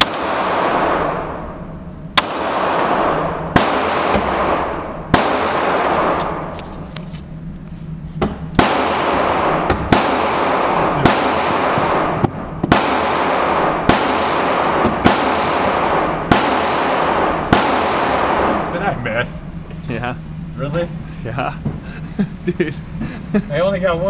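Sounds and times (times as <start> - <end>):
steady noisy hum: 0.0 - 24.0
handgun shots: 2.2 - 6.8, 8.2 - 18.7.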